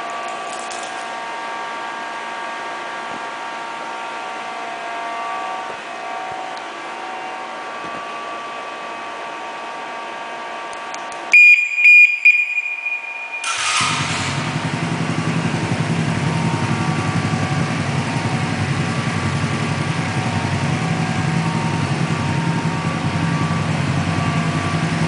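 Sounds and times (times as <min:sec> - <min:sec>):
scooter alarm beeps and chirps: 0:11.3 - 0:13.9.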